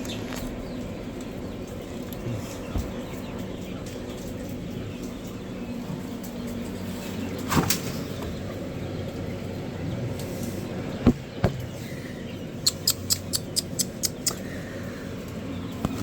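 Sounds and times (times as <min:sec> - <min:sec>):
chicks peeping: 0:00.0 - 0:16.0
steady low hum: 0:00.0 - 0:16.0
dull thumps: 0:11.0 - 0:11.8.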